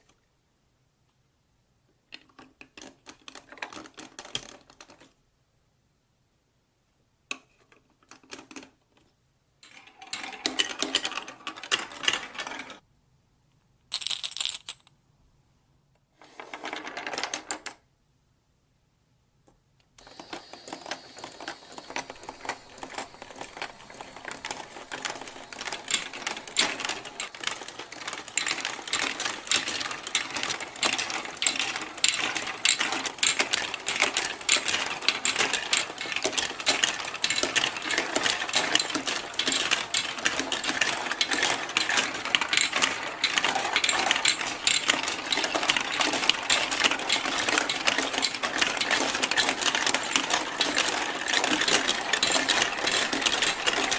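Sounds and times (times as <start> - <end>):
marbles clattering on plastic tracks: 9.6 - 12.8, 13.9 - 14.9, 20.2 - 53.9.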